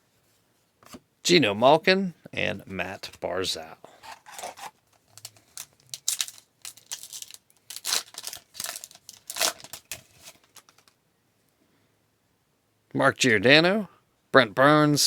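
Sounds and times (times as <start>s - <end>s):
wrapper tearing and crinkling: 4.0s - 11.0s.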